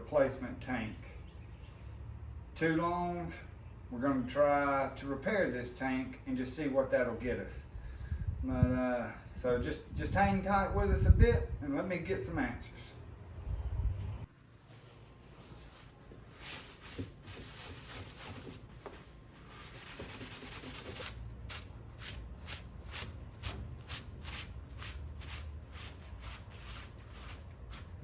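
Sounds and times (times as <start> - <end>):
hand scrubbing plastic tank: 14.7 - 28.0.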